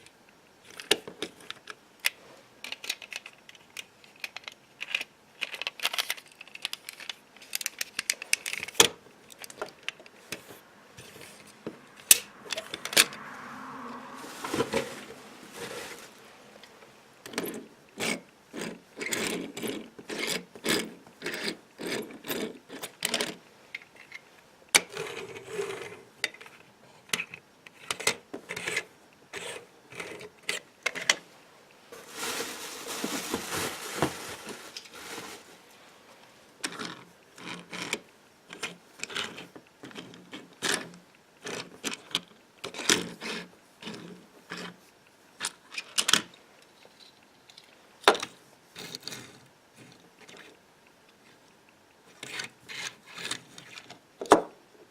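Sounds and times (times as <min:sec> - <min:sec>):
toy cars clicking and rattling: 0:00.6 - 0:13.2, 0:17.2 - 0:31.2, 0:36.6 - 0:44.8, 0:45.4 - 0:50.6, 0:52.1 - 0:54.0
packaging rustling: 0:14.2 - 0:16.2, 0:31.9 - 0:35.8.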